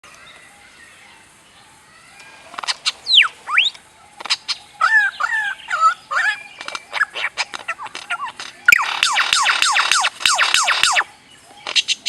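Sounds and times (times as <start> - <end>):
whistled bird calls: 2.7 - 12.0
sharp clicks: 6.6 - 12.0.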